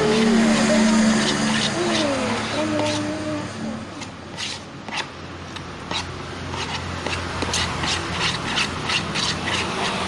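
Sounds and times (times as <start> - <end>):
spoon scraping thick slime: 0.0 - 3.2, 4.0 - 10.0.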